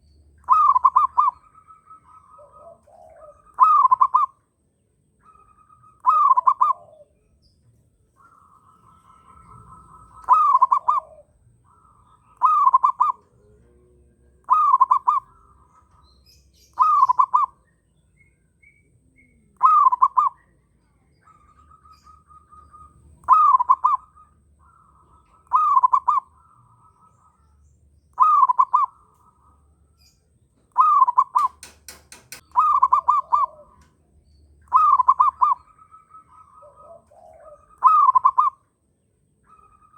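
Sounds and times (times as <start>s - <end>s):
dove cooing: 0.0s - 4.6s, 5.2s - 38.8s
birds chirping faintly: 0.0s - 39.9s
sharp clicks: 31.3s - 32.8s.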